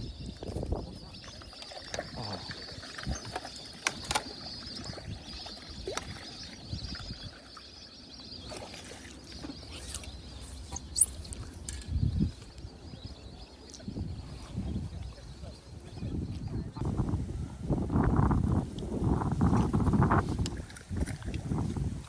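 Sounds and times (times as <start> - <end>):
wind rumbling on microphone: 0.0 - 7.5, 9.5 - 22.0
low wind gust: 10.2 - 22.0.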